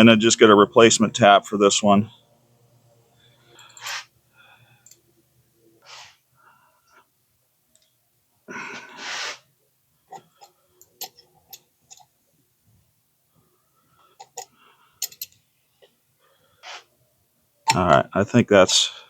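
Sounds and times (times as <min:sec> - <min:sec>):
heavy breath: 0:08.5 - 0:09.5.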